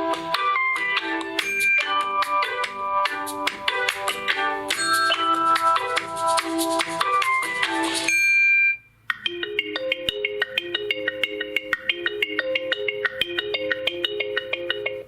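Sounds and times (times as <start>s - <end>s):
phone ringtone melody: 0.0s - 15.0s
ringtone of short struck notes: 1.4s - 3.2s, 4.7s - 6.0s, 7.2s - 15.0s.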